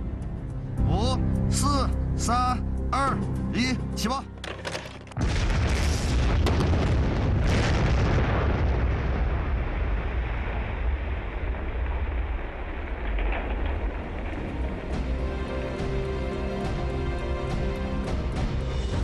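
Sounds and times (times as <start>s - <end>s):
explosion boom and low rumble: 5.2s - 15.3s
sharp cracks: 10.4s - 15.2s.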